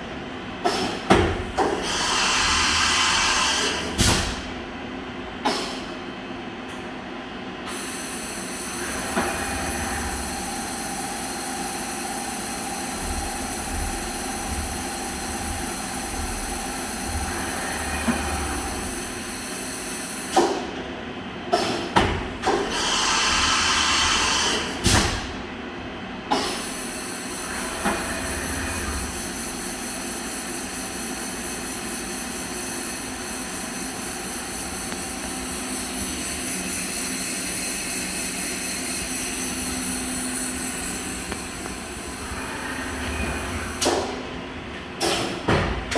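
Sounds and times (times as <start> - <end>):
machine whine with high tones: 26.8 - 44.2.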